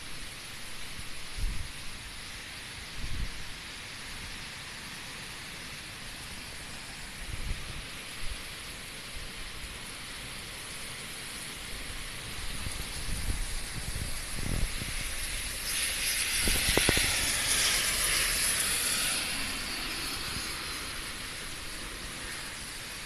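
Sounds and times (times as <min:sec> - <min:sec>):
heavy rain hissing: 0:00.0 - 0:23.0
rushing wind gust: 0:11.8 - 0:23.0.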